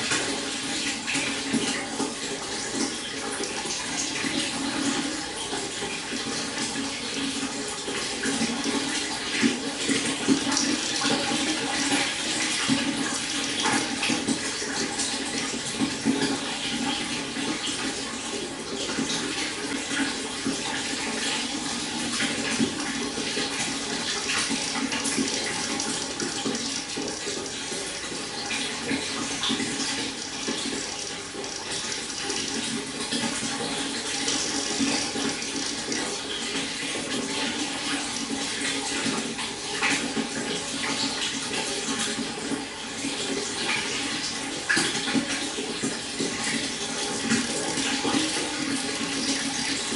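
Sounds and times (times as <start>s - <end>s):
stream water babbling: 22.2s - 36.7s.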